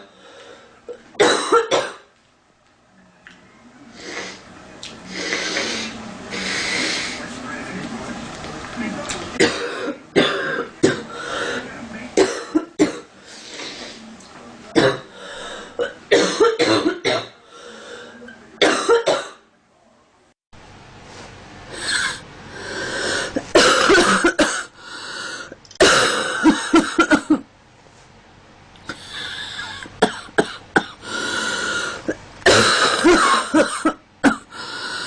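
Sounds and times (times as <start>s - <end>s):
woman coughing: 1.2s - 2.0s, 9.4s - 11.0s, 12.2s - 13.1s, 15.8s - 17.4s, 18.6s - 19.4s, 23.5s - 24.7s, 25.8s - 27.4s, 29.6s - 31.0s, 32.4s - 34.5s.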